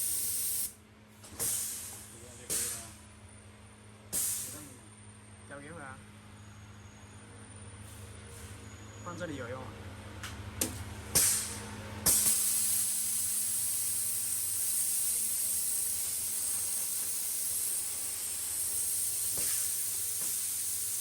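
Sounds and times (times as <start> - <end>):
compressed air hissing: 0.0 - 0.7, 1.3 - 3.0, 4.1 - 4.7, 11.1 - 21.0
valve click: 12.1 - 21.0.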